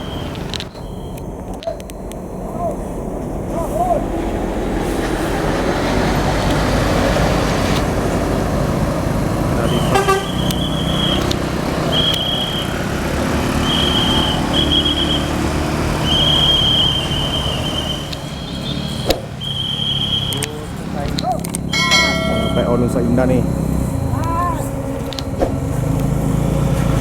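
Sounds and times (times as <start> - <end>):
bus engine rumble: 0.0 - 27.0
bus horn tooting high note: 9.8 - 11.2.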